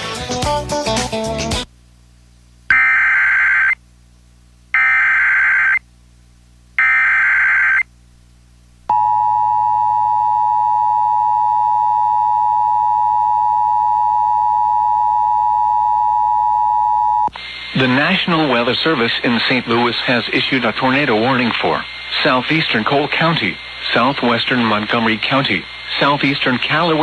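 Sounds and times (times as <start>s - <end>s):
music: 0.0s - 1.7s.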